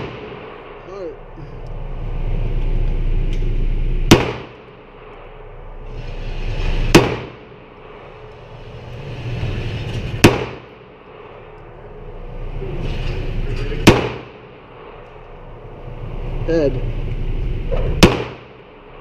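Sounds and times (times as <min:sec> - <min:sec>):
handgun shots: 0:00.0 - 0:00.4, 0:04.1 - 0:04.6, 0:07.0 - 0:07.4, 0:18.0 - 0:18.5.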